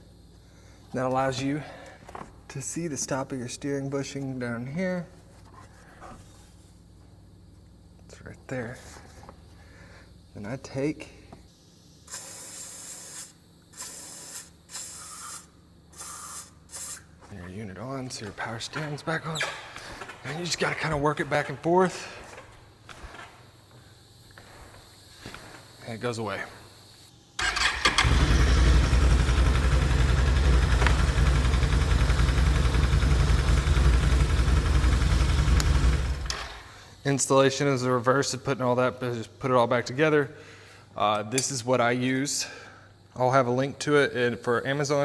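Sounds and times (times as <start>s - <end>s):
aerosol spray hissing: 12.0s - 17.1s
atv engine idling: 27.4s - 36.7s.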